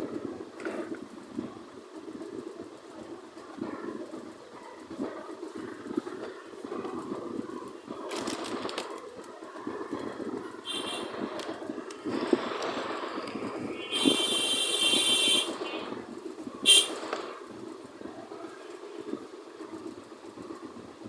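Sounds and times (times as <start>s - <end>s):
short sharp burst: 16.7s - 17.1s.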